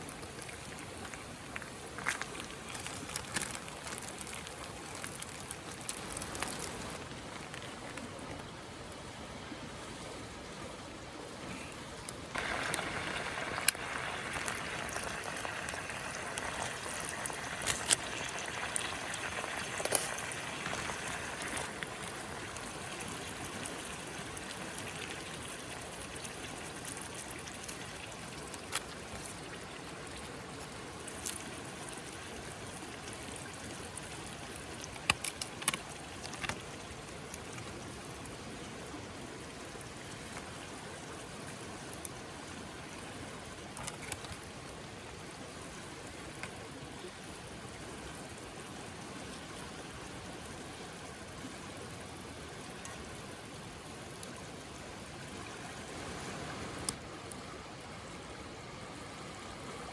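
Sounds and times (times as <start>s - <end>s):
wood fire crackling and popping: 0.0s - 7.6s, 12.4s - 22.7s, 33.0s - 37.7s.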